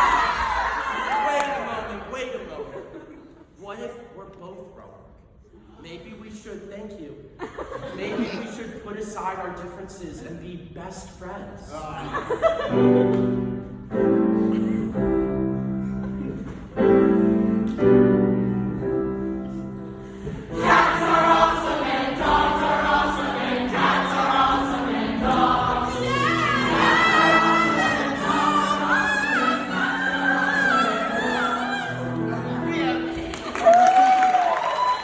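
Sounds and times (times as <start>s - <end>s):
piano chords: 12.6s - 33.6s
group of voices singing: 20.2s - 33.3s.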